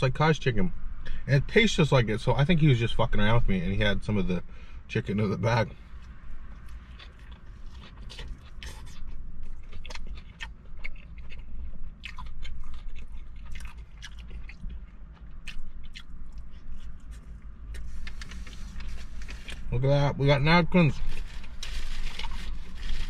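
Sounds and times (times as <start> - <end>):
steady low rumble: 0.0 - 23.0
chewing and biting food: 5.9 - 19.7, 21.1 - 23.0.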